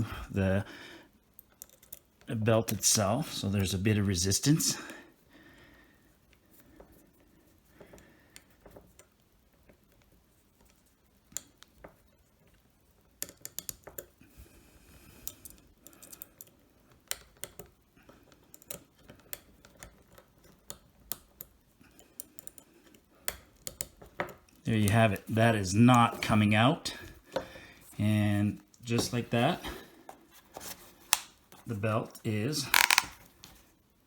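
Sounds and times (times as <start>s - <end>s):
screwdriver clicks and taps: 32.7s - 33.2s.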